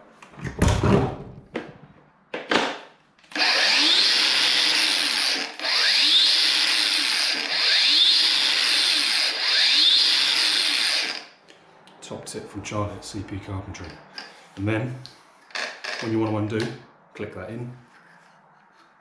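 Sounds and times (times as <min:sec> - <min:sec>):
angle grinder whining: 0:03.3 - 0:11.4.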